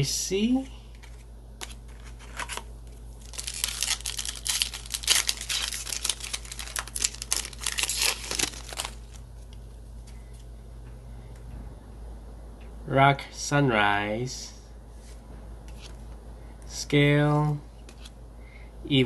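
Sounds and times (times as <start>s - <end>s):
foil wrapper crinkling: 1.0s - 9.6s.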